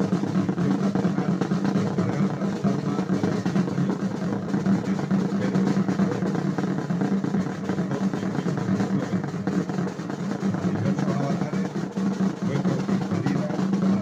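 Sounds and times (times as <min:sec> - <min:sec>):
snare drum roll: 0:00.0 - 0:14.0.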